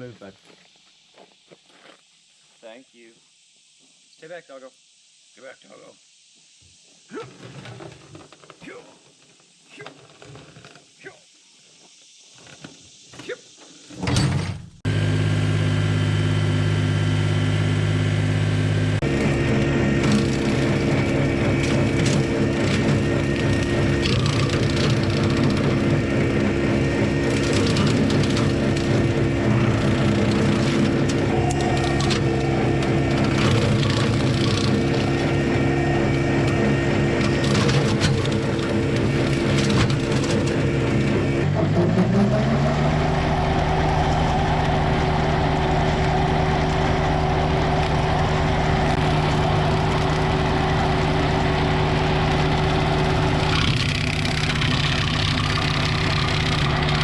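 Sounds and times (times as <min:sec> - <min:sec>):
tractor diesel engine running: 0:14.9 - 0:57.0.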